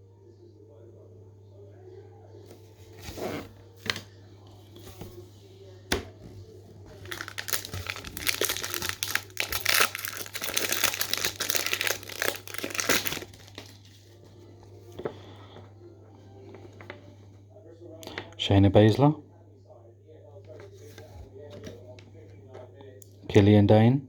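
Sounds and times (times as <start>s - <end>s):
wrapper tearing and crinkling: 6.9s - 14.0s.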